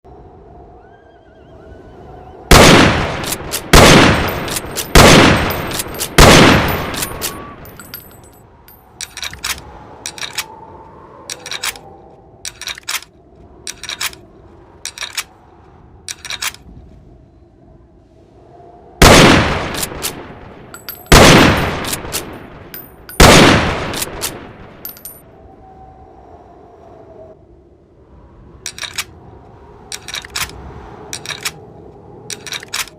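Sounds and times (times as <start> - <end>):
rifle shots with ringing tail: 2.5 - 8.2, 19.0 - 25.2
metallic clicks of rifle action: 3.2 - 10.5, 11.3 - 15.4, 16.1 - 16.7, 19.6 - 25.2, 28.7 - 29.1, 29.9 - 31.6, 32.3 - 32.9.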